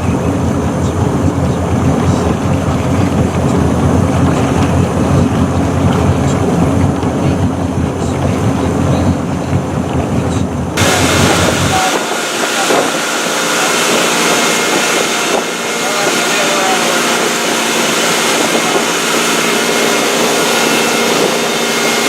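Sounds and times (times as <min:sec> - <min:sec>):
boat motor droning: 0:00.0 - 0:22.0
water noise: 0:00.0 - 0:22.0
wind noise: 0:00.0 - 0:22.0.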